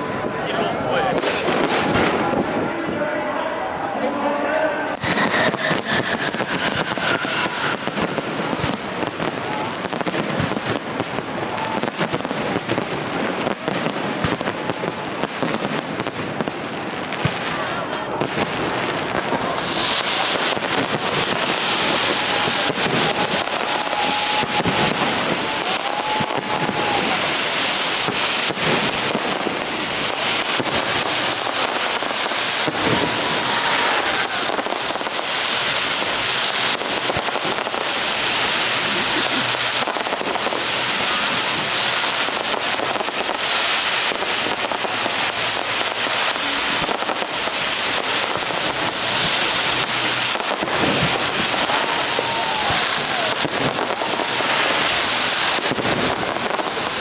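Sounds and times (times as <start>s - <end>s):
fireworks crackling and popping: 0.0s - 57.0s
firework whistles: 4.9s - 10.6s, 19.2s - 57.0s.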